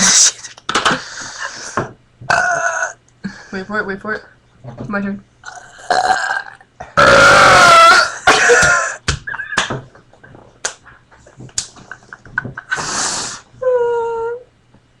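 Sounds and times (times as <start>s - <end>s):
loud rasping belch: 2.3s - 3.0s, 5.4s - 8.1s
person coughing: 8.2s - 9.0s.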